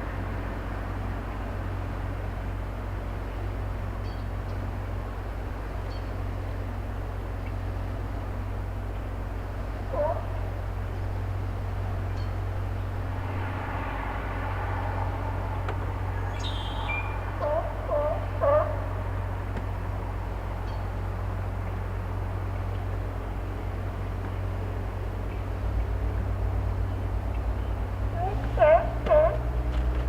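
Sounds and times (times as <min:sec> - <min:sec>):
excavator engine drone: 0:00.0 - 0:30.0
bird calls: 0:15.7 - 0:19.7.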